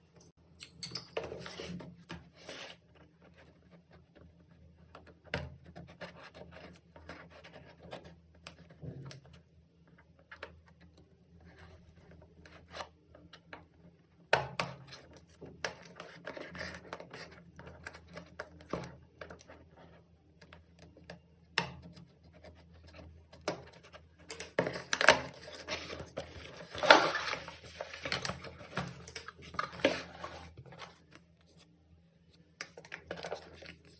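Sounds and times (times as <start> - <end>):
hands handling packaging: 24.3 - 31.7.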